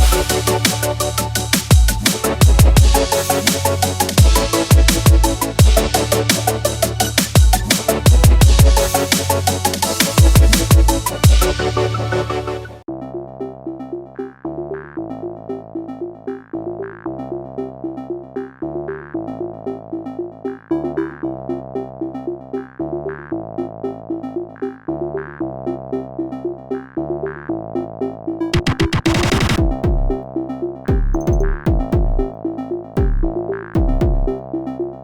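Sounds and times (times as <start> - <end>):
steady beat: 0.0 - 11.7, 28.6 - 30.2, 30.9 - 32.4, 33.0 - 34.4
sustained bass notes: 0.0 - 35.0
synthesizer riff: 0.0 - 35.0.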